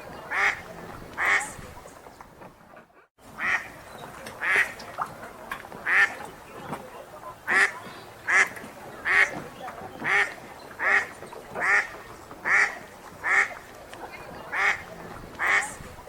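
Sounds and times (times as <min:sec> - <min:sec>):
ducks quacking: 0:00.0 - 0:16.0.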